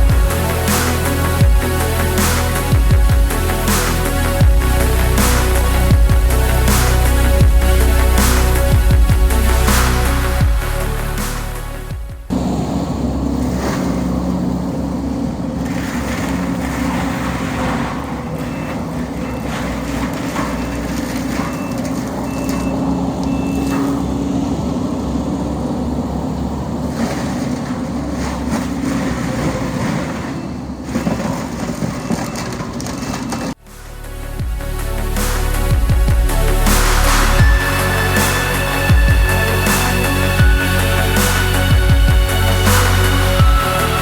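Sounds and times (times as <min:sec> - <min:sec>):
heavy equipment engine running: 0:00.0 - 0:31.0
reversing alarm beeping: 0:20.4 - 0:24.0.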